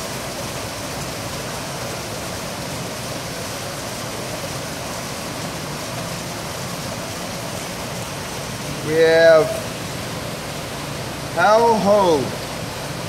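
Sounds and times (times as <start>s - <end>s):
steady rushing noise: 3.8s - 13.0s.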